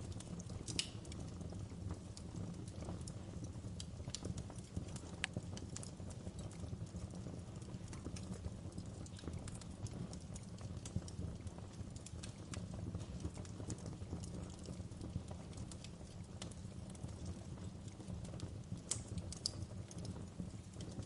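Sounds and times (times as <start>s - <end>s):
wood fire crackling: 0.0s - 21.0s.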